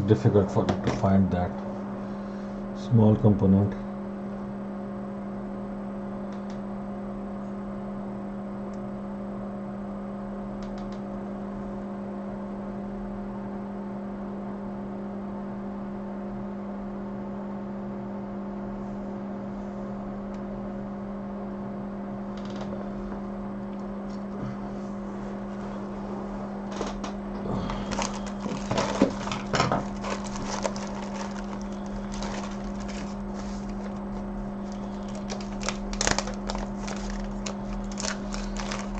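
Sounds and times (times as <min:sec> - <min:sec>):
steady electrical hum: 0:00.0 - 0:38.9
crackling and rustling handling noises: 0:00.2 - 0:01.7, 0:24.1 - 0:38.9.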